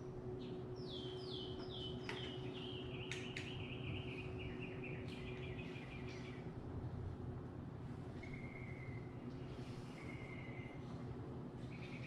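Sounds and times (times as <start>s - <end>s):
faint steady hum: 0.0s - 12.0s
songbird singing: 0.4s - 6.5s, 8.2s - 9.1s, 9.8s - 10.8s, 11.6s - 12.0s.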